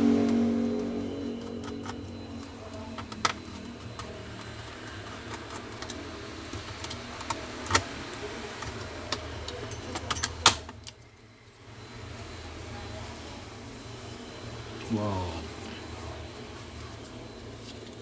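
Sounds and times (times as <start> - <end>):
steady low hum: 0.0 - 5.1.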